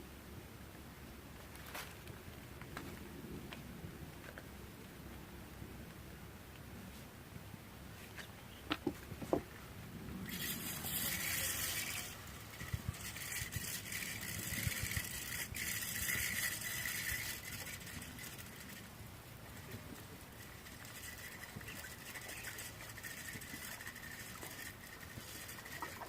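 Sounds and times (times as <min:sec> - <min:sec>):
fishing reel whirring: 0:10.2 - 0:26.0.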